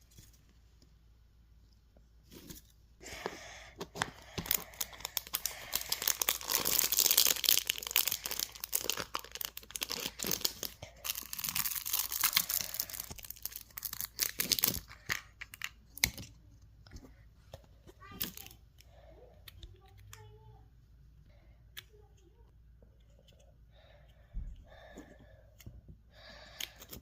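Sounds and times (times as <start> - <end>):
wrapping tearing and crinkling: 3.9 - 16.3.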